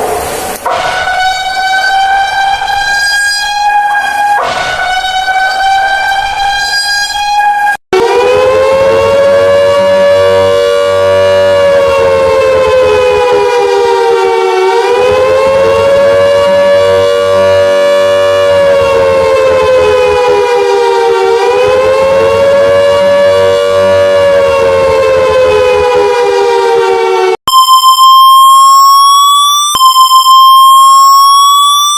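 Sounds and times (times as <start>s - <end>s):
siren wailing: 0.0s - 31.9s.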